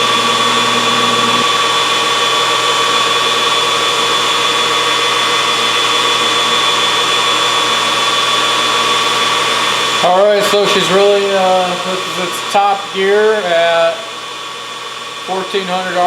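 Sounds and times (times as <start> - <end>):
metal lathe spindle whining: 0.0 - 3.1.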